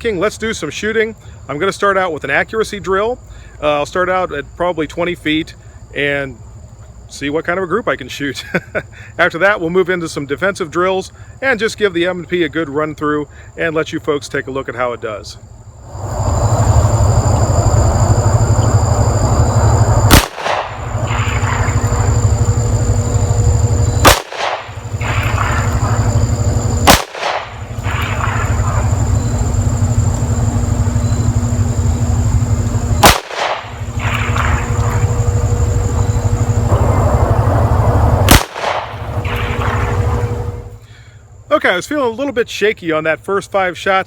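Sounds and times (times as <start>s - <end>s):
steady low rumble: 15.4s - 40.9s
pistol shots: 20.1s - 29.3s, 33.0s - 35.4s, 38.2s - 40.4s.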